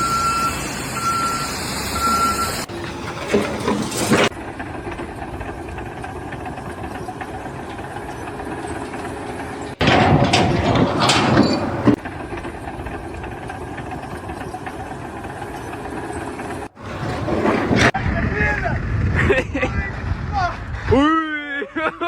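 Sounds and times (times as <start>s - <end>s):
engine running: 0.0s - 18.0s
loud rough noise: 9.7s - 12.0s.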